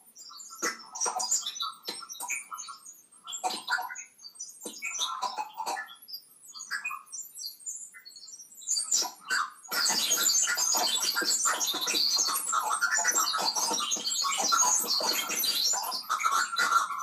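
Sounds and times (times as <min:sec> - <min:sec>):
garbled digital audio glitching: 0:00.1 - 0:17.0
chirping blips: 0:08.8 - 0:17.0
scratchy digital crackle: 0:08.8 - 0:17.0.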